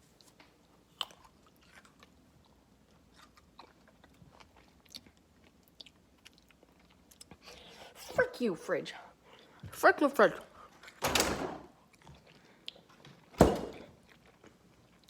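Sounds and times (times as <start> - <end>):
chewing food crunches: 0.9 - 7.5, 11.8 - 13.1, 14.0 - 15.0.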